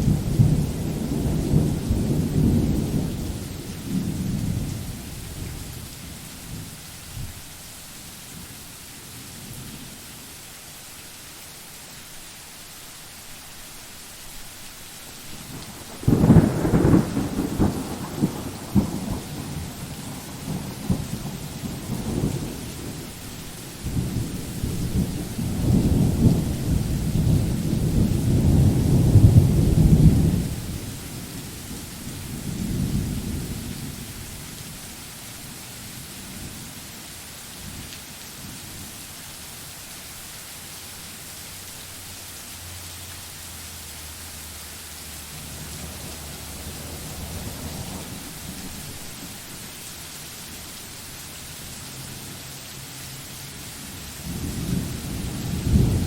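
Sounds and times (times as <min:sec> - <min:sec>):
thunder rumbling: 0:00.0 - 0:07.3, 0:15.3 - 0:34.4, 0:45.3 - 0:49.8, 0:54.0 - 0:56.0
steady rain: 0:00.0 - 0:56.0.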